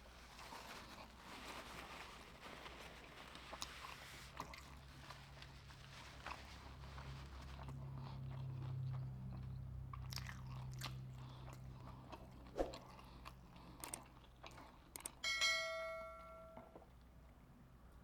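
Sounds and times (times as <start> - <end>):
chewing and crunching: 0.0 - 15.2
bright ringing clink: 15.2 - 16.8.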